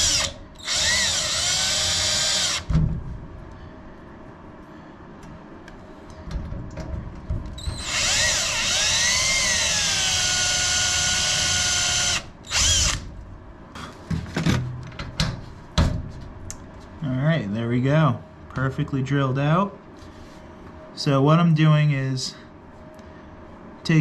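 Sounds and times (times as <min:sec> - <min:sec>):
power drill whining: 0:00.0 - 0:02.7, 0:07.6 - 0:13.0.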